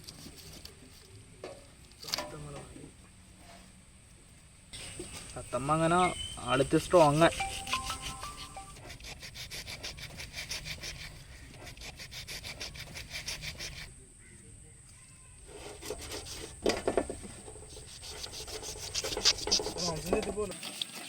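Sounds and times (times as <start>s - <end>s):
knife scraping fish scales: 7.0s - 14.0s, 15.5s - 16.8s, 17.6s - 20.1s.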